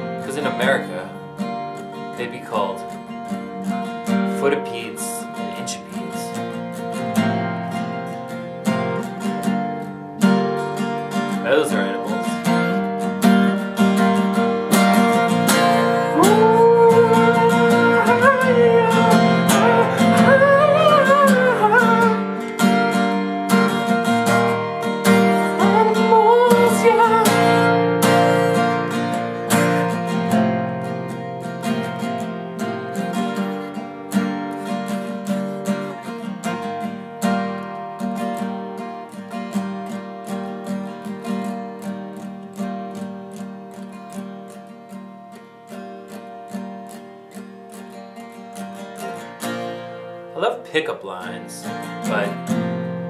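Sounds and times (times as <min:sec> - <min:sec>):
wavering wordless melody: 0:00.0 - 0:34.4
acoustic guitar strumming chords: 0:00.0 - 0:53.0.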